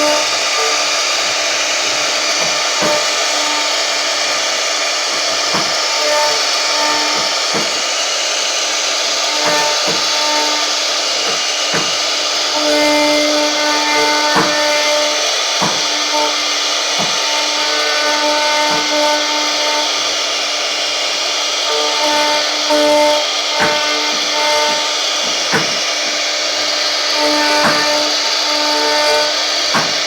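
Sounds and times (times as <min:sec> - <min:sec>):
router spindle cutting wood: 0:00.0 - 0:30.0.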